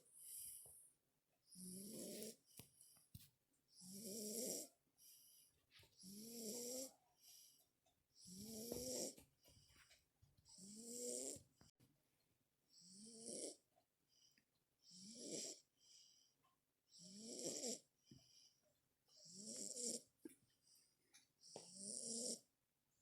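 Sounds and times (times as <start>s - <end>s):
soft breaths: 0.0s - 3.3s, 5.0s - 11.4s, 17.5s - 21.8s
person snoring: 1.5s - 2.4s, 3.8s - 4.7s, 6.0s - 6.9s, 10.6s - 11.4s, 12.7s - 13.6s, 14.8s - 15.6s, 17.0s - 17.8s, 19.2s - 20.1s, 21.4s - 22.5s.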